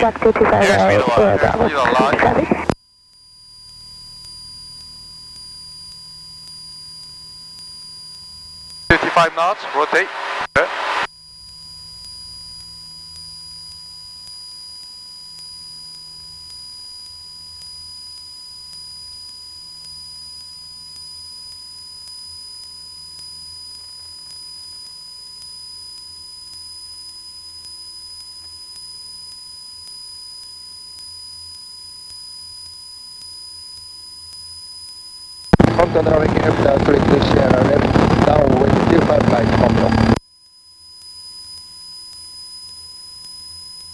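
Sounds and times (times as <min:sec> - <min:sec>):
thin electronic whine: 0:00.0 - 0:02.8, 0:08.9 - 0:11.1, 0:35.6 - 0:40.2
airplane engine low drone: 0:35.6 - 0:40.2.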